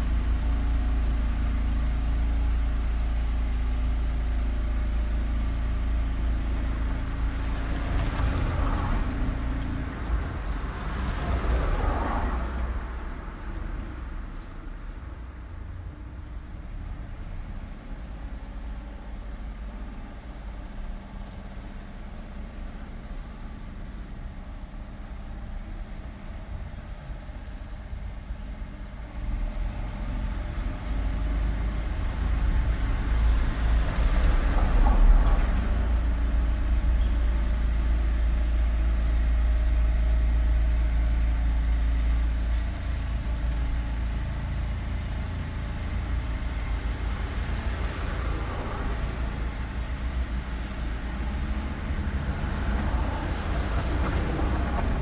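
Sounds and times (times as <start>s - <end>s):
traffic engine rumble: 0.0s - 55.0s
vehicle passing close: 7.3s - 15.0s, 46.0s - 55.0s.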